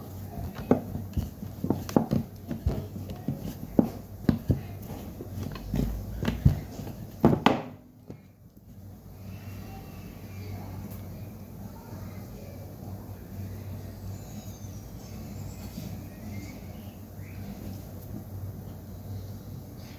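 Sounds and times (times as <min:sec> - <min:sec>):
steady low hum: 0:00.0 - 0:19.9
objects clicking and tapping: 0:00.4 - 0:08.2.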